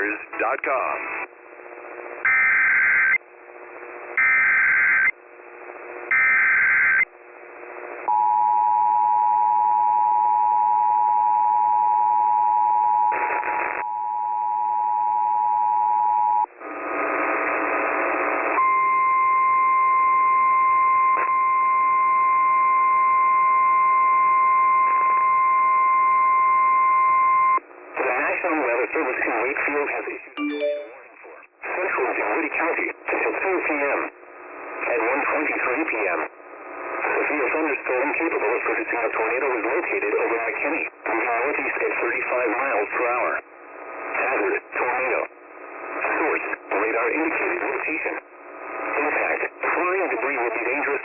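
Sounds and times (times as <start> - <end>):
two-tone attention signal: 30.4 - 31.1.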